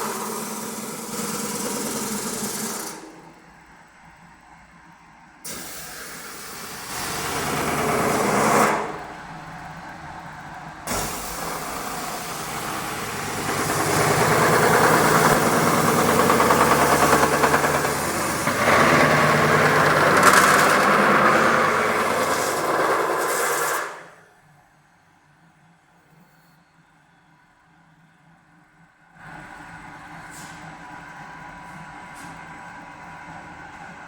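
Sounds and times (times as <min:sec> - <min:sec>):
metal spinning roller grinding: 0:00.0 - 0:03.4, 0:11.3 - 0:24.2.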